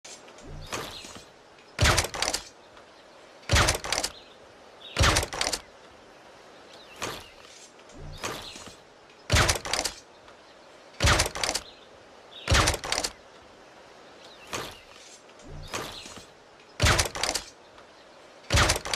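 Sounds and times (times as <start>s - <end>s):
air rifle shots cracking: 1.8s - 2.5s, 3.5s - 4.2s, 5.0s - 5.7s, 9.3s - 10.0s, 11.0s - 11.7s, 12.5s - 13.2s, 16.8s - 17.6s, 18.5s - 18.9s.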